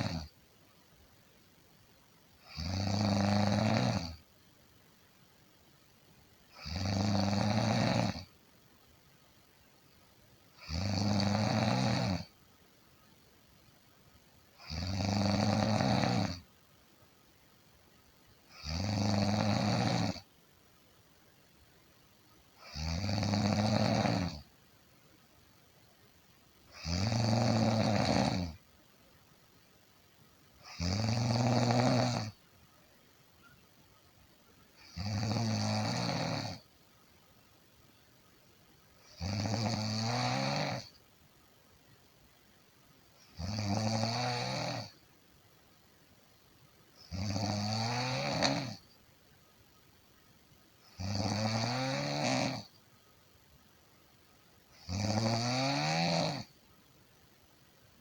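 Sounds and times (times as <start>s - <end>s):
snoring: 0.0s - 0.3s, 2.4s - 4.2s, 6.5s - 8.3s, 10.6s - 12.3s, 14.6s - 16.5s, 18.5s - 20.3s, 22.6s - 24.5s, 26.7s - 28.6s, 30.6s - 32.4s, 34.8s - 36.7s, 39.0s - 41.0s, 43.2s - 45.0s, 47.0s - 48.9s, 50.9s - 52.8s, 54.8s - 56.6s.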